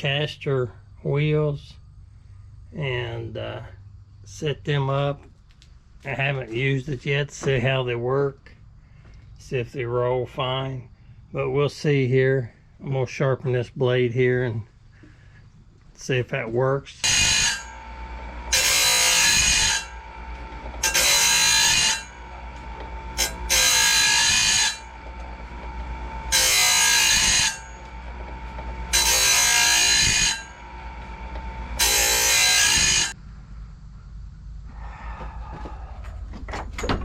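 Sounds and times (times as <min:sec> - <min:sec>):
blade sharpener grinding: 0:17.0 - 0:33.2
motor humming: 0:17.1 - 0:33.2.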